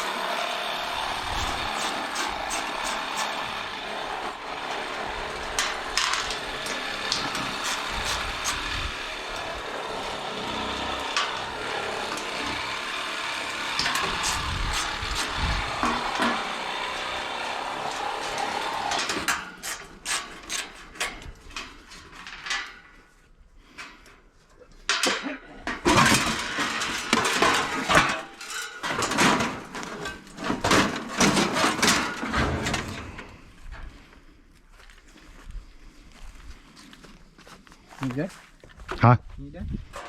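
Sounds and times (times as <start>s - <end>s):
power tool grinding: 0.0s - 22.4s
metal parts clinking and clattering: 5.4s - 8.7s, 24.9s - 32.9s.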